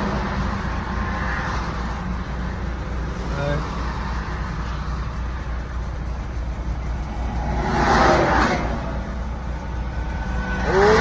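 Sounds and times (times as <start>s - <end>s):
parked vehicle engine hum: 0.0s - 11.0s
vehicle passing: 7.0s - 11.0s.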